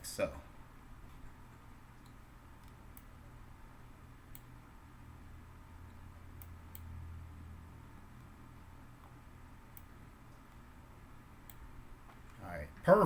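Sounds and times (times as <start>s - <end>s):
low steady hum: 0.0s - 13.0s
computer mouse clicks: 1.5s - 3.1s, 4.3s - 4.5s, 6.4s - 6.9s, 9.0s - 10.6s, 11.4s - 12.4s.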